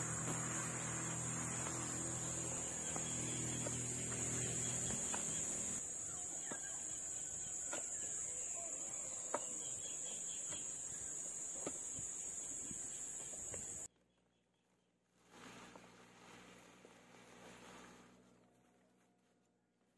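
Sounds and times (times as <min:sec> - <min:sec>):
low hum: 0:00.0 - 0:05.9
insects droning: 0:00.0 - 0:13.9.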